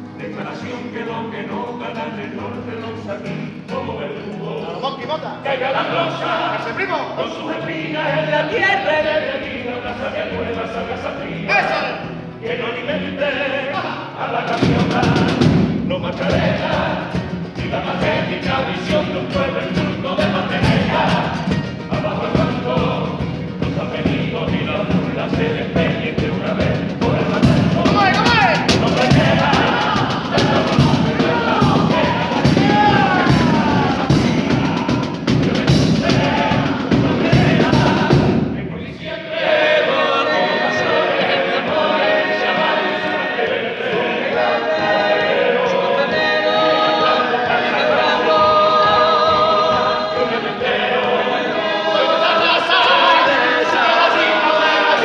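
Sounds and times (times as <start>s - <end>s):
choir singing in chorus: 0.0s - 55.0s
guitar: 0.0s - 55.0s
drum: 14.4s - 55.0s.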